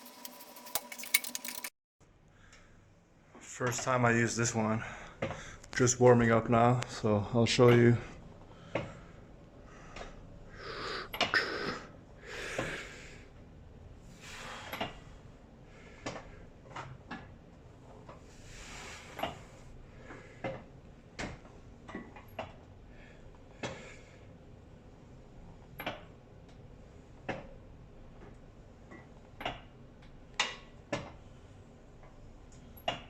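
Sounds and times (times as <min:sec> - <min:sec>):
strained hissy breathing: 0:08.5 - 0:13.4, 0:14.0 - 0:16.5, 0:18.2 - 0:20.5.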